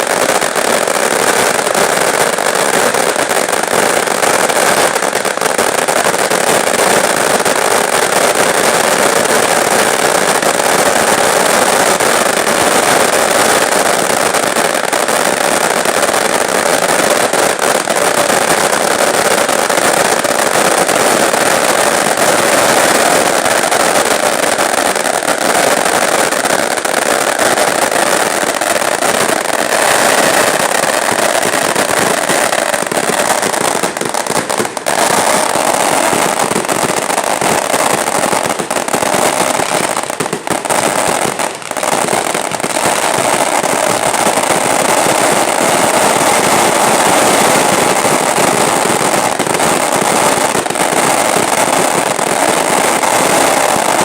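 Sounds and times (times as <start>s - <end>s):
bonfire crackling and popping: 0.0s - 54.0s.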